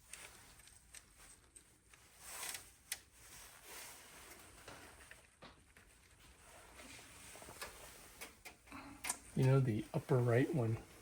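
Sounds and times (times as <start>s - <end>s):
faint clicks of small screws: 0.1s - 3.1s.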